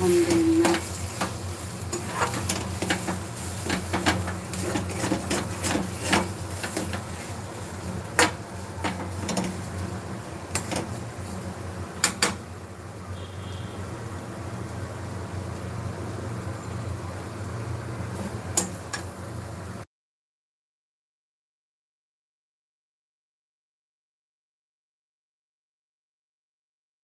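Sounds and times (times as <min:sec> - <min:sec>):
cookware and utensils clattering: 0:00.0 - 0:09.8.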